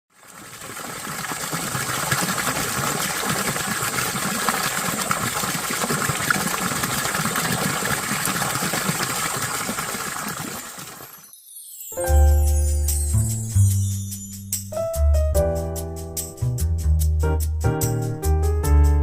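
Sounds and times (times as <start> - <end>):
stream flowing over rocks: 0.1 - 11.2.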